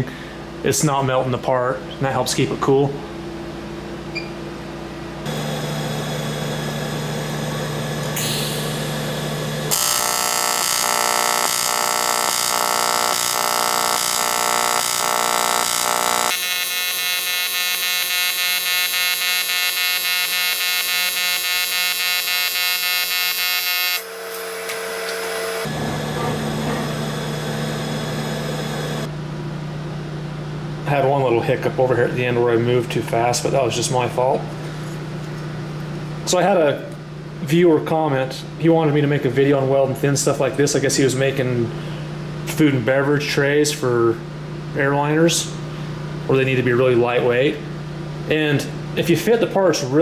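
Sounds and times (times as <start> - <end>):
welding arc buzzing: 5.2 - 29.1.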